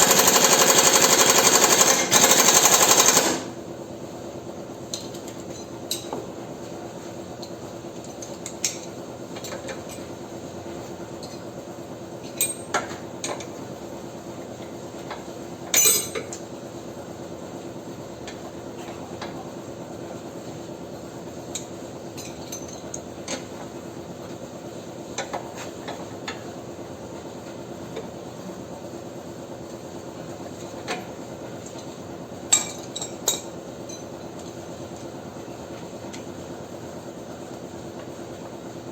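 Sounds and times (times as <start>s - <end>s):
metal tools clinking and knocking: 15.8s - 16.4s, 32.5s - 34.1s.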